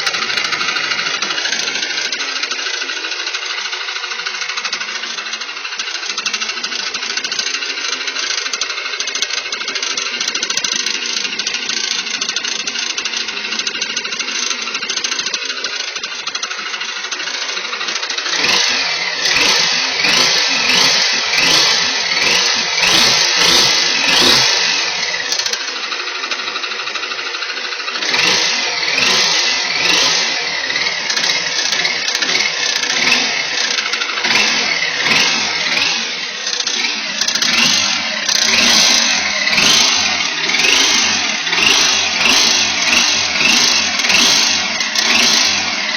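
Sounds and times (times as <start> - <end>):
pickup engine revving: 18.2 - 25.5, 28.0 - 45.9.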